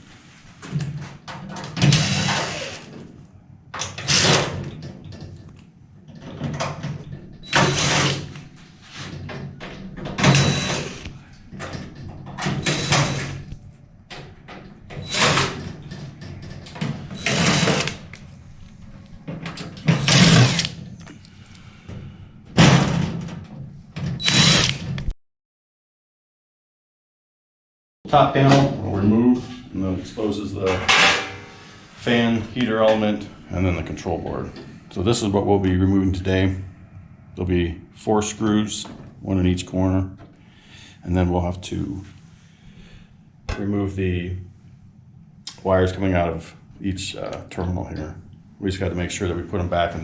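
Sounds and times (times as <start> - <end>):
power drill running: 1.8 - 2.9, 7.5 - 8.3, 10.2 - 11.0, 12.6 - 13.4, 17.2 - 18.0, 19.9 - 20.8, 24.2 - 24.9.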